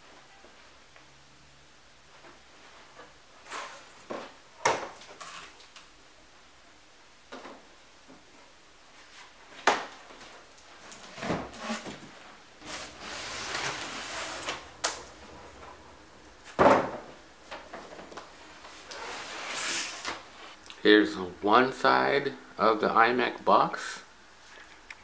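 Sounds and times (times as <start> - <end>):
cardboard scraping and rustling: 10.9 - 14.6.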